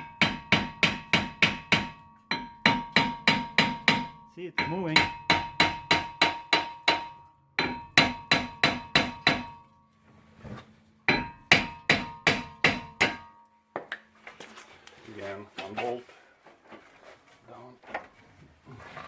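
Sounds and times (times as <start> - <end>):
hammer ringing on metal rotor: 0.0 - 9.7, 11.1 - 13.5.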